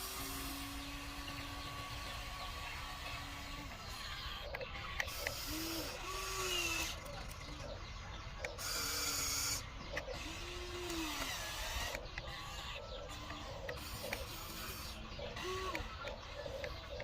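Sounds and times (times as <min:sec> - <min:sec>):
small electric motors whirring: 0:00.0 - 0:07.8, 0:08.4 - 0:17.0
scattered clicks: 0:04.4 - 0:07.8, 0:13.2 - 0:14.6, 0:15.4 - 0:17.0.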